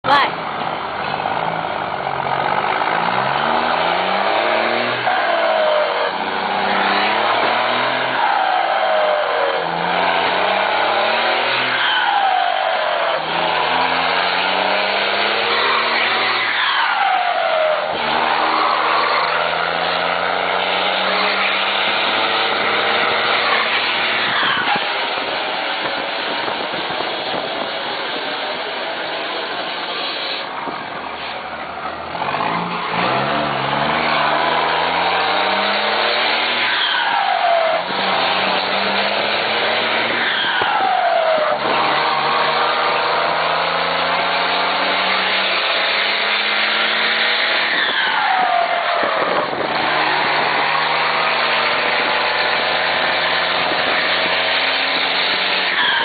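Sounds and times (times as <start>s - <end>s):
truck diesel engine accelerating: 0.0s - 56.0s.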